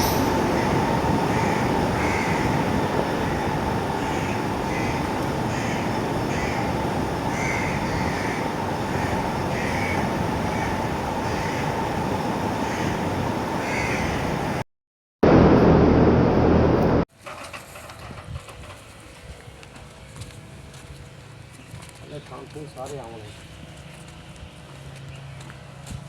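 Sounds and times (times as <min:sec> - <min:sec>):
birds harsh calls: 0:00.0 - 0:14.6
steady rushing noise: 0:00.0 - 0:14.6, 0:15.2 - 0:17.0.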